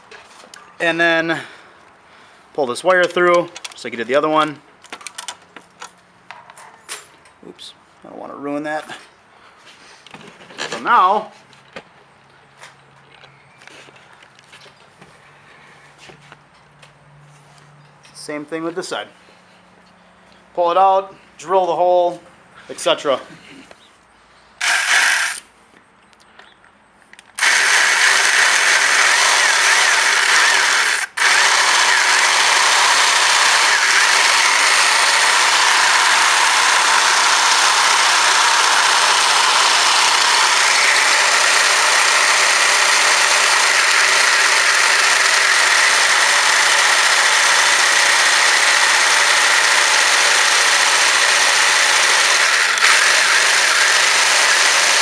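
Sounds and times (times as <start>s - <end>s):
electric drill drilling metal: 24.6s - 25.4s, 27.4s - 55.0s.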